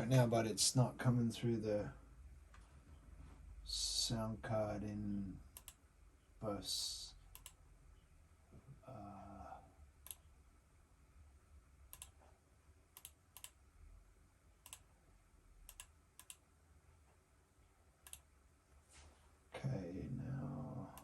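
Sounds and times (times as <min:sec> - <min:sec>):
faint low hum: 0:00.0 - 0:21.0
computer clicks: 0:05.6 - 0:05.8, 0:07.3 - 0:07.6, 0:10.0 - 0:10.3, 0:11.9 - 0:12.2, 0:13.0 - 0:13.6, 0:14.6 - 0:14.9, 0:15.7 - 0:16.4, 0:18.0 - 0:18.3.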